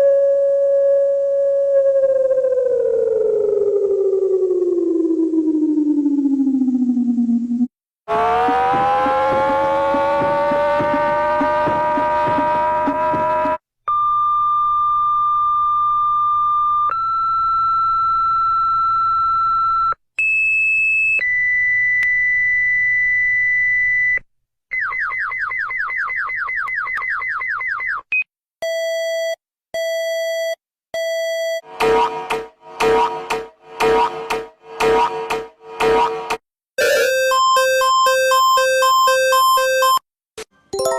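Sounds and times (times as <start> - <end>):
fast falling sweep tone: 1.3 - 13.6
rising layered alert tone: 8.1 - 13.6, 31.6 - 40.0
long steady alert beeps: 37.2 - 40.0.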